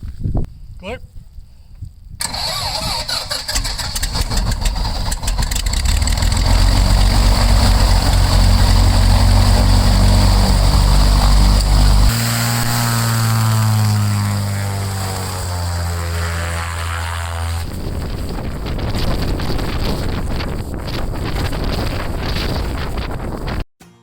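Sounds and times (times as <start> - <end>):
plane piston engine starting and running: 2.2 - 18.3.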